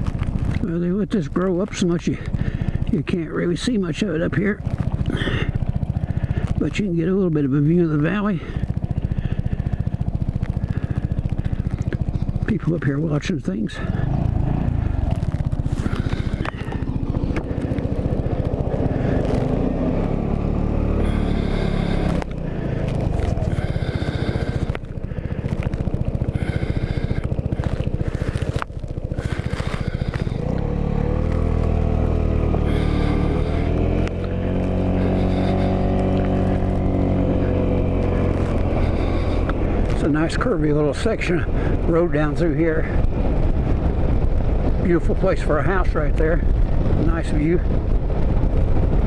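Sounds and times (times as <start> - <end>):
motorcycle engine running: 0.0 - 49.0
wind noise on microphone: 41.3 - 49.0.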